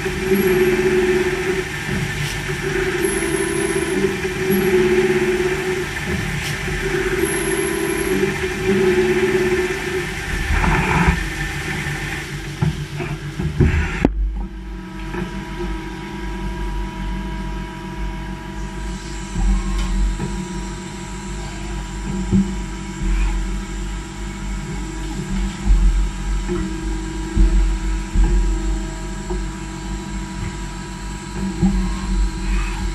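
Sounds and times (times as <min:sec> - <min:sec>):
clattering machinery: 0:00.0 - 0:14.1
low rumble: 0:00.0 - 0:14.8
machining equipment humming: 0:00.0 - 0:32.9.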